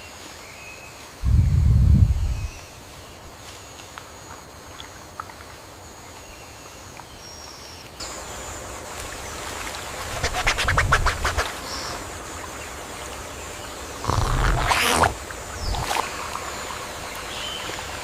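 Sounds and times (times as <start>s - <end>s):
outdoor ambience: 0.0s - 18.0s
rattling harsh animal calls: 14.0s - 15.2s.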